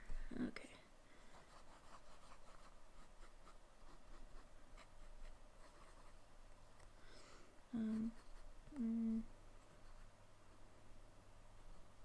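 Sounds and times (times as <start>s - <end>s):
fountain pen scratching on paper: 1.4s - 6.2s.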